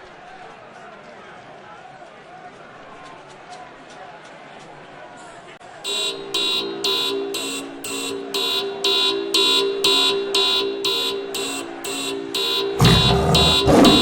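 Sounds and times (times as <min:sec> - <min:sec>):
buzzing alarm beeps: 0:05.9 - 0:14.0
steady low tone: 0:05.9 - 0:14.0.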